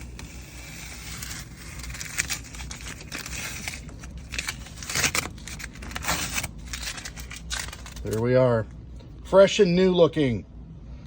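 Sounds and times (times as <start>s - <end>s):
masking tape peeling off plastic: 0.0s - 8.2s.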